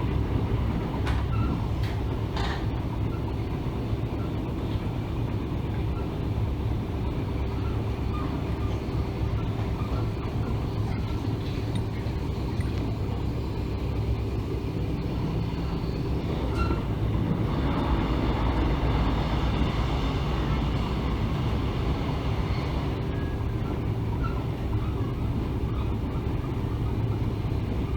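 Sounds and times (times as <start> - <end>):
train rumbling along track: 0.0 - 27.9
faint track clicks: 10.6 - 13.3.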